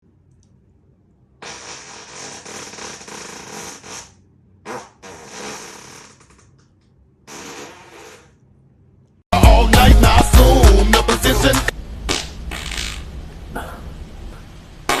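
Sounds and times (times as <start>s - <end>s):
man farting: 1.4s - 6.6s, 7.2s - 8.4s, 12.1s - 13.1s.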